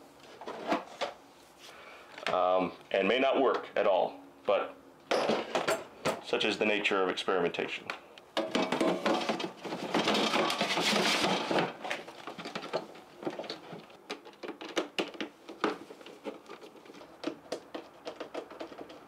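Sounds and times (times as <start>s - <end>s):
scraping rustle: 8.8s - 13.9s.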